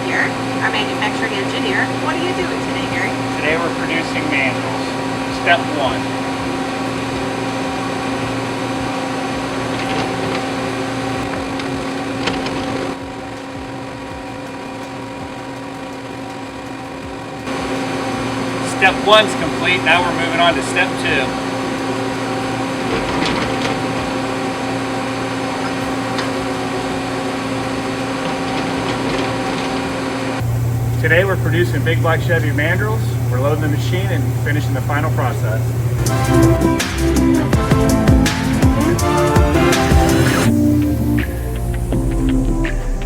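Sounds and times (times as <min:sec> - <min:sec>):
machine mechanical hum: 0:00.0 - 0:43.0.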